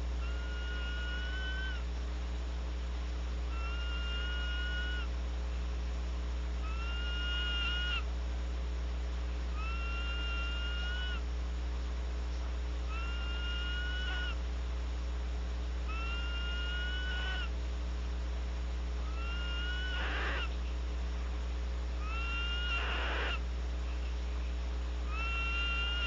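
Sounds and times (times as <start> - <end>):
low electrical hum: 0.0 - 26.0
owl screeching: 0.2 - 1.8, 3.5 - 5.1, 6.6 - 8.1, 9.5 - 11.2, 12.9 - 14.4, 15.9 - 17.5, 19.0 - 20.5, 22.0 - 23.4, 25.1 - 26.0.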